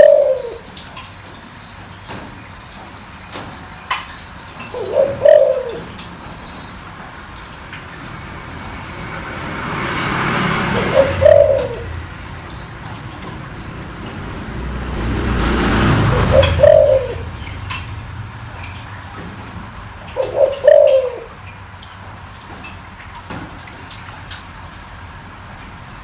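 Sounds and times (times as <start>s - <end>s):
dove cooing: 0.0s - 0.7s, 4.6s - 21.5s.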